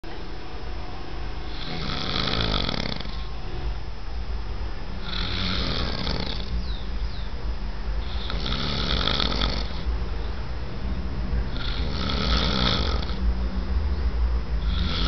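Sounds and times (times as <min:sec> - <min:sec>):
steady low rumble: 0:00.0 - 0:15.0
man breathing in sleep: 0:01.5 - 0:03.3, 0:05.0 - 0:06.5, 0:08.0 - 0:09.9, 0:14.6 - 0:15.0
person snoring: 0:01.5 - 0:03.3, 0:05.0 - 0:06.5, 0:08.0 - 0:09.9, 0:11.5 - 0:13.2, 0:14.6 - 0:15.0.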